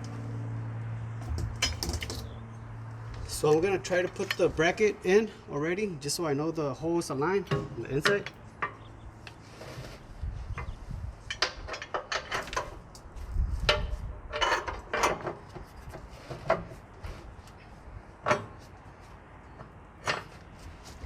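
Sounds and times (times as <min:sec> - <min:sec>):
metal bracket clinks and knocks: 0:01.2 - 0:02.6, 0:03.9 - 0:04.7.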